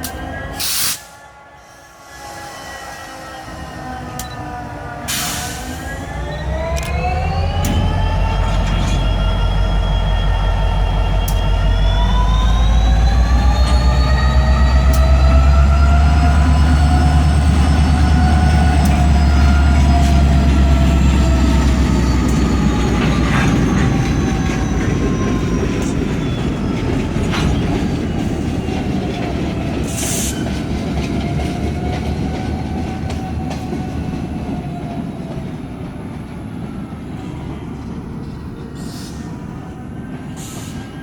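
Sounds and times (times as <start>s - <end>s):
locomotive turbocharger whine: 4.2s - 29.2s.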